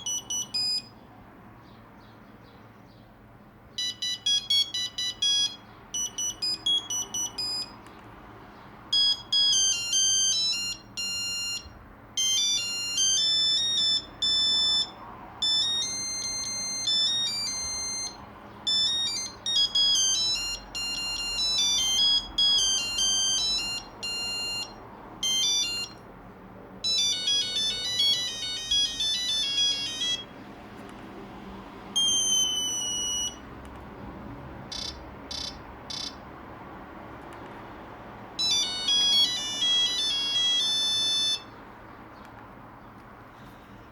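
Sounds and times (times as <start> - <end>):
mobile phone ringtone beeps: 0.0 - 1.0, 3.8 - 7.8, 8.9 - 26.1, 26.8 - 30.3, 32.0 - 33.5, 34.7 - 36.2, 38.4 - 41.6.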